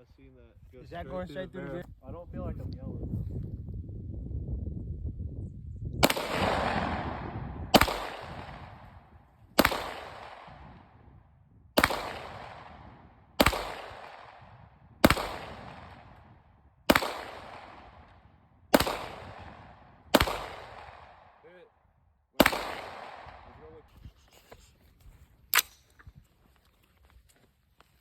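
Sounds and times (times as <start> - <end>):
gunshots with long echo: 6.0 - 11.2, 11.8 - 21.5, 22.4 - 23.8.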